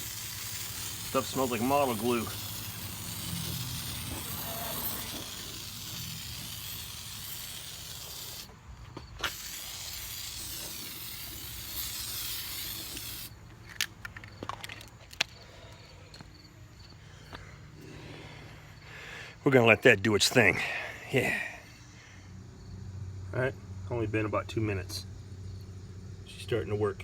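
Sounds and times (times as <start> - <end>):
spray hissing: 0.0 - 8.5, 9.2 - 13.3.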